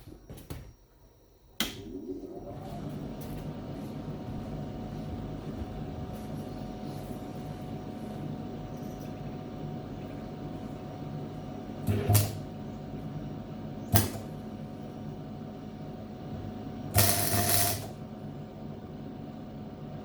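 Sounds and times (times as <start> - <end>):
steady low hum: 0.0 - 20.0
welder arc crackling: 11.7 - 12.5, 13.9 - 14.4, 16.8 - 18.0.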